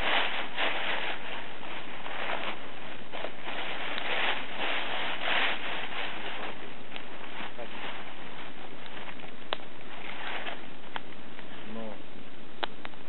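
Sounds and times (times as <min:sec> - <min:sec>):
campfire crackling and hissing: 0:00.0 - 0:13.0.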